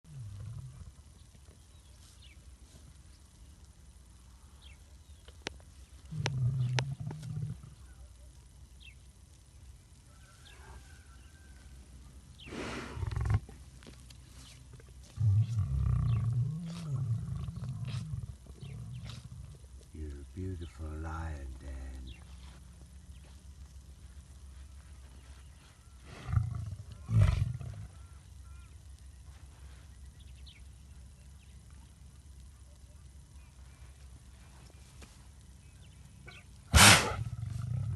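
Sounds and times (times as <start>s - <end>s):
lion roaring: 6.1s - 7.8s, 15.1s - 19.6s, 26.0s - 28.0s, 36.3s - 37.9s
lion sneezing: 36.3s - 37.3s.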